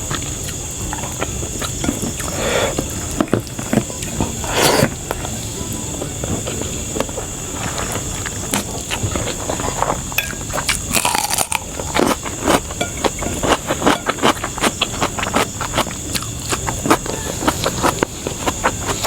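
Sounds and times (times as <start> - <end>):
chewing and crunching: 0.0 - 19.0.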